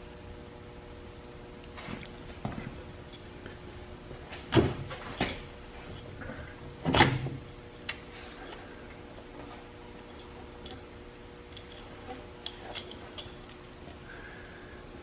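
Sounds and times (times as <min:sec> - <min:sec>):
metal chain clanks and rattles: 0:01.9 - 0:03.4, 0:11.5 - 0:13.8.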